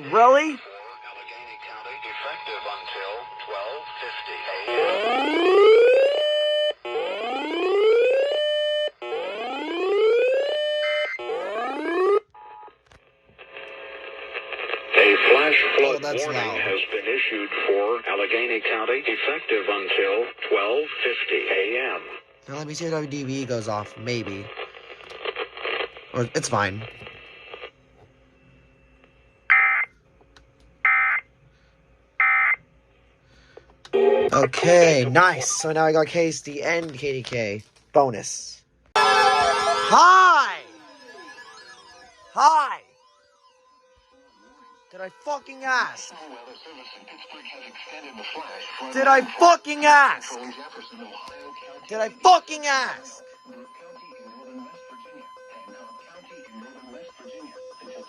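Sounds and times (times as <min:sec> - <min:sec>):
radio hiss: 0:00.0 - 0:05.2, 0:13.4 - 0:27.8, 0:33.2 - 0:37.6, 0:44.5 - 0:58.0
electronic whooping alarm: 0:00.0 - 0:12.8, 0:15.2 - 0:17.0, 0:29.4 - 0:29.9, 0:30.8 - 0:31.3, 0:32.2 - 0:32.6, 0:33.4 - 0:36.0, 0:38.9 - 0:58.0
shrill digital data bursts: 0:39.0 - 0:57.8.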